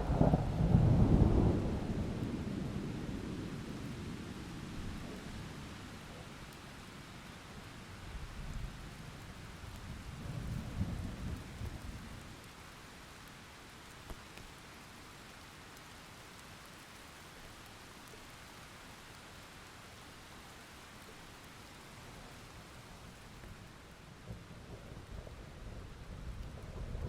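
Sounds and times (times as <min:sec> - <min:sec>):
thunder rumbling: 0:00.0 - 0:05.3, 0:24.2 - 0:27.0
steady rain falling: 0:00.0 - 0:27.0.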